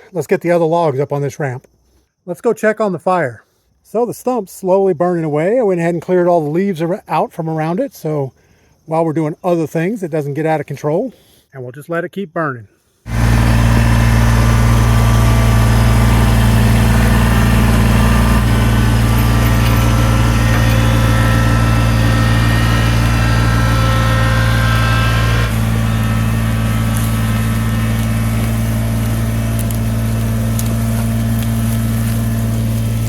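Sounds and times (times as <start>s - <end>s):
tractor engine running: 13.1s - 33.0s.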